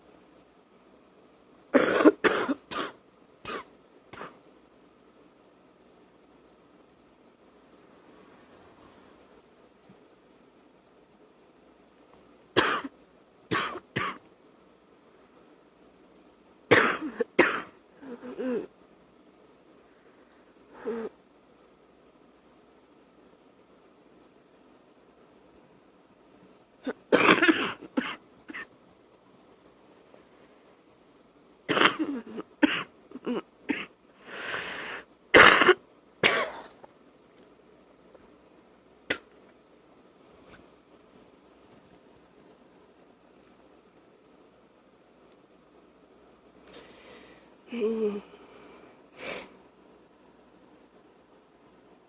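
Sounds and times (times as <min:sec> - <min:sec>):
woman wet coughing: 0:01.8 - 0:04.4, 0:26.9 - 0:28.6.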